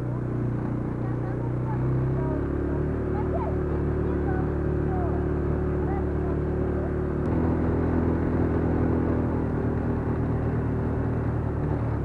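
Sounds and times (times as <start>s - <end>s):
quad bike engine running: 0.0s - 12.0s.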